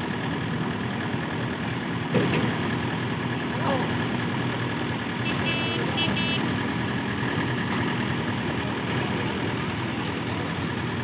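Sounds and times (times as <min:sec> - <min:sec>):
large diesel engine running: 0:00.0 - 0:11.0
short high-pitched beeps: 0:05.3 - 0:06.4.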